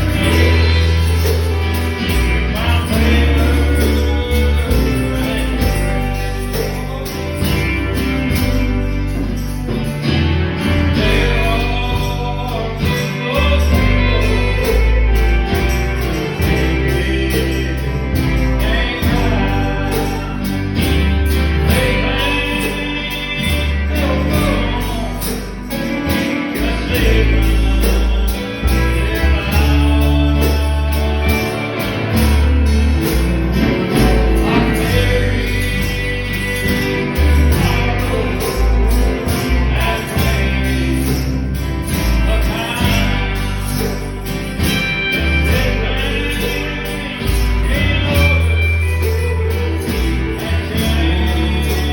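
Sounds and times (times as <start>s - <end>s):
bass line: 0.0s - 51.9s
person singing over a band: 0.0s - 51.9s.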